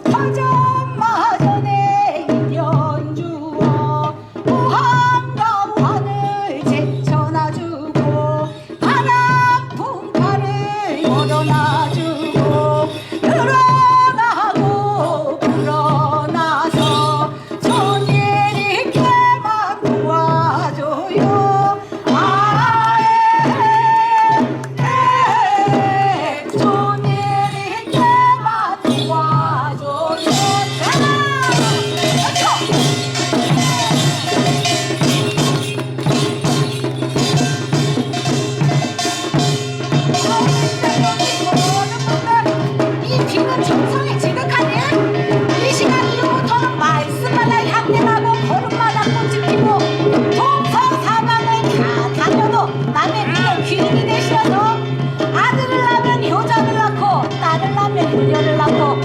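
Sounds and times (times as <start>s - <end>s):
metal percussion: 0.0s - 59.0s
steady drum beat: 0.0s - 59.0s.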